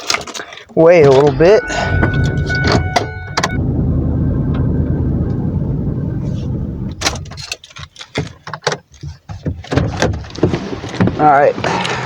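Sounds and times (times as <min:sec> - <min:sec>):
car driving rumble from inside: 0:01.1 - 0:07.6.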